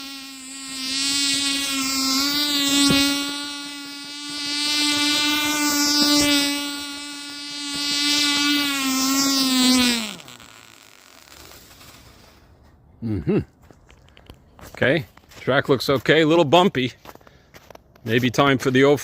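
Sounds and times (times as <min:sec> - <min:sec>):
model engine running high-pitched: 0:00.0 - 0:12.3.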